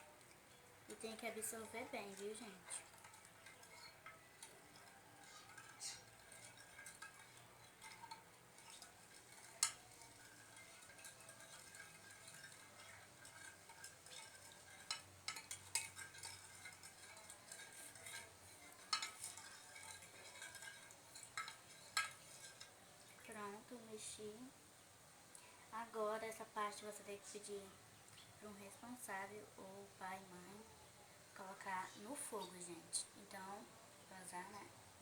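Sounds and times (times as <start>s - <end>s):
spoon stirring thick slime: 0.2s - 23.6s
spoon clinking against cup: 2.1s - 22.8s.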